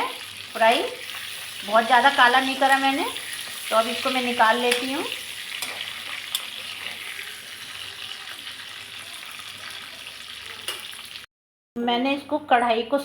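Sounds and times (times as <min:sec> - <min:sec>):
garlic sizzling in hot oil: 0:00.0 - 0:11.3.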